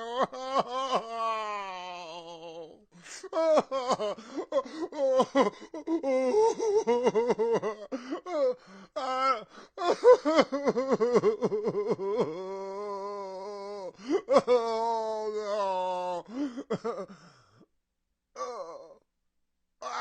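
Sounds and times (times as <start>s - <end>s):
man sobbing: 0.0s - 17.6s, 18.4s - 19.0s
gasping breaths: 4.2s - 5.8s, 7.8s - 9.8s, 16.3s - 17.6s.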